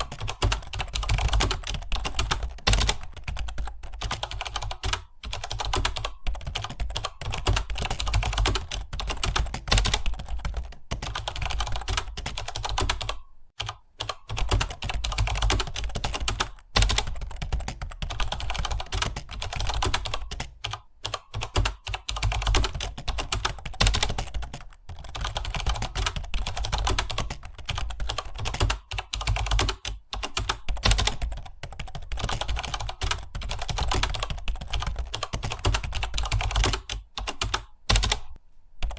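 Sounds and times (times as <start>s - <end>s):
typing on computer keyboard: 0.0s - 38.9s.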